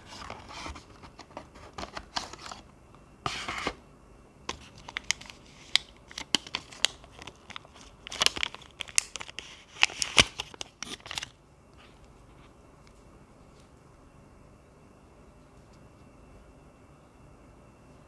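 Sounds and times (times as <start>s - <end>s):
packaging crinkling and rustling: 0.0s - 2.7s, 4.5s - 12.1s.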